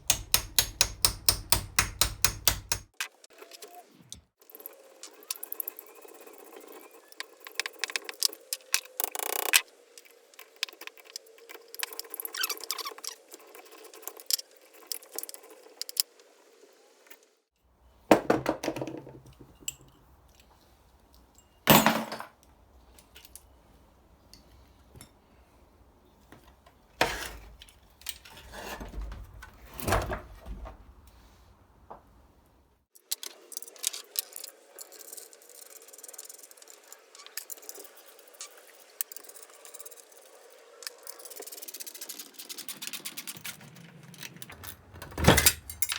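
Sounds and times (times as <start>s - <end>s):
metal parts clinking: 40.8s - 45.9s.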